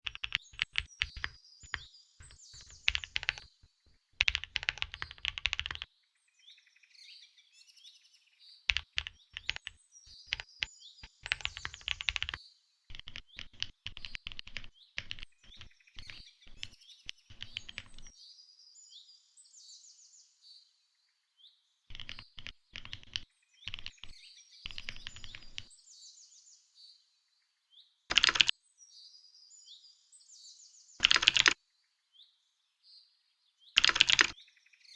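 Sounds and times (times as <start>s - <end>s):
mechanical keyboard typing: 0.0s - 3.5s, 4.2s - 5.9s, 8.7s - 18.1s, 21.9s - 25.7s, 28.1s - 28.5s, 31.0s - 31.6s, 33.8s - 34.4s
high bird chirps: 0.1s - 5.9s, 8.8s - 18.2s, 22.0s - 25.8s.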